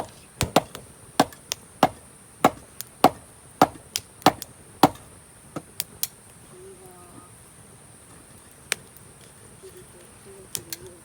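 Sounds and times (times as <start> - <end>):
wood being chopped: 0.0 - 5.9.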